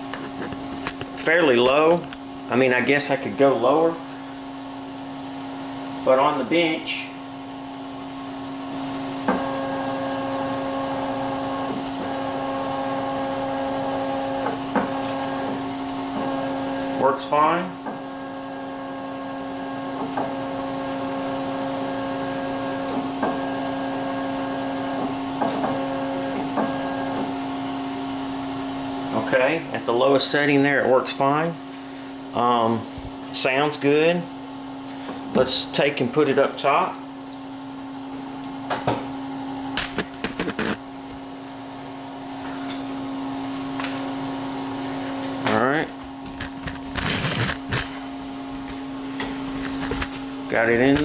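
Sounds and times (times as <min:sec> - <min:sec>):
steady electrical hum: 0:00.0 - 0:51.0
stepper motor whine: 0:08.3 - 0:28.3, 0:44.1 - 0:47.9.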